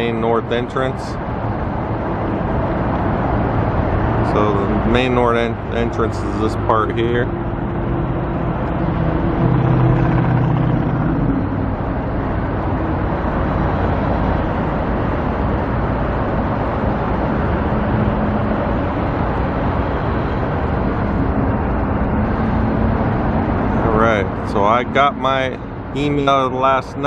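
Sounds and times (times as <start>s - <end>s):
engine hum: 0.0s - 27.0s
passing cars: 0.0s - 27.0s.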